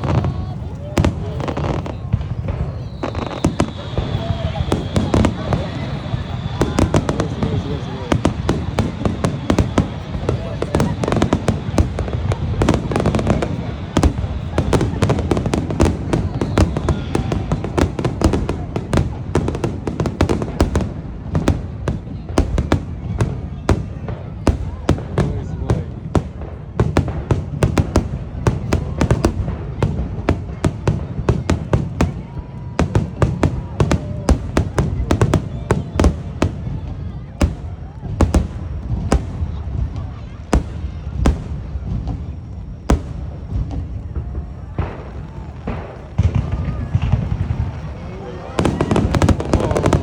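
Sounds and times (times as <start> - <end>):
booming firework bursts: 0.0 - 50.0
firework bangs and crackles: 0.0 - 50.0
low rumble of reports: 22.0 - 50.0.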